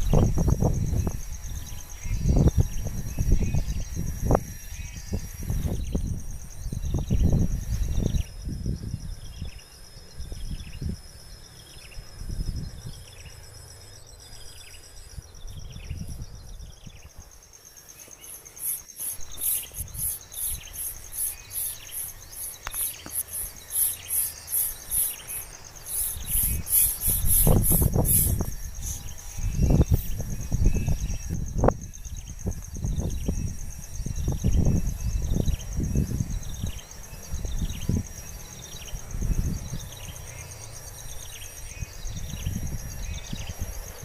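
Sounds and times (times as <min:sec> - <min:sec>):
high insect drone: 0:00.0 - 0:44.0
rhythmic high chirping: 0:18.0 - 0:29.0.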